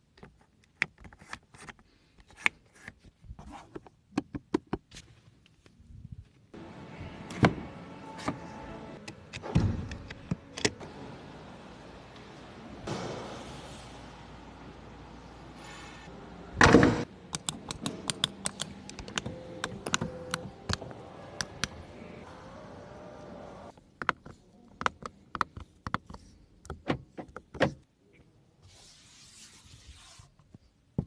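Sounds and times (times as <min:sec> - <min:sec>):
sharp clicks and taps: 0:17.3 - 0:20.8.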